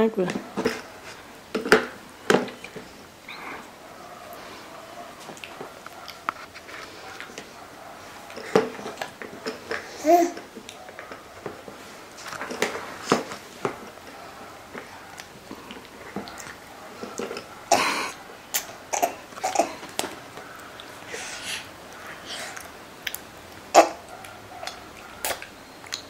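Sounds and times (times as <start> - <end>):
rasping cough-like burst: 17.7 - 18.2, 23.7 - 24.0.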